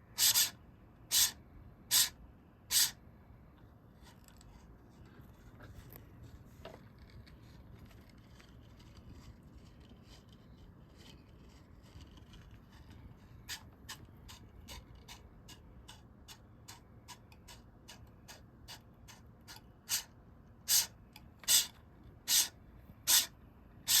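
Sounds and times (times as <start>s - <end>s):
servo motor clicking strokes: 0.2s - 3.0s, 13.5s - 20.1s, 20.7s - 21.7s, 22.3s - 23.3s.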